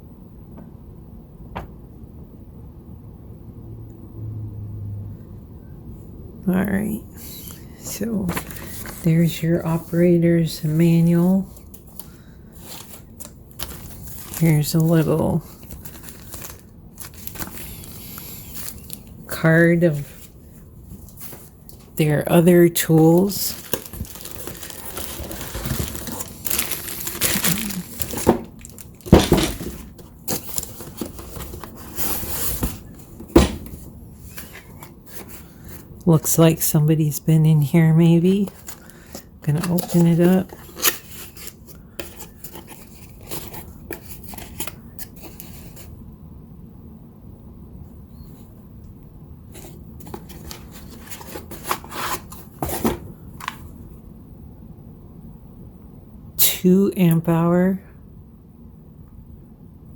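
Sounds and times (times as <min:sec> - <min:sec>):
paper or plastic rustling: 0:07.2 - 0:36.0, 0:38.2 - 0:46.0, 0:49.5 - 0:53.8
cardboard and hard items knocking: 0:23.5 - 0:33.8, 0:50.1 - 0:53.6.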